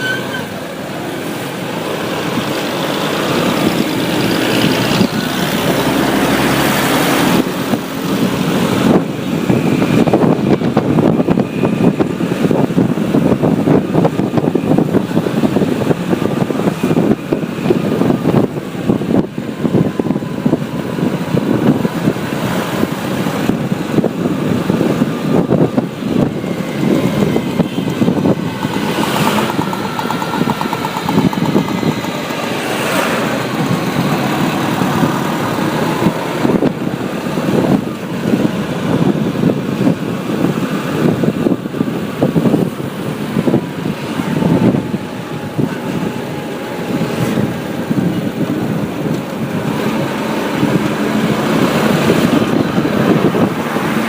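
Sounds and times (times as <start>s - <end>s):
road traffic noise: 0.0s - 54.0s
vehicles passing: 0.0s - 54.0s
motorcycle engine running: 22.9s - 40.0s.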